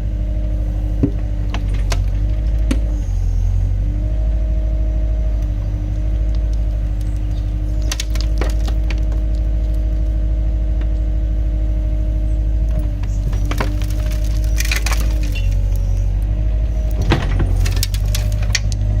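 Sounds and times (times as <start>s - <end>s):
diesel engine running: 0.0s - 19.0s
steady pitched hum: 0.0s - 19.0s
sharp cracks: 6.2s - 10.0s, 12.9s - 16.0s, 16.8s - 18.9s.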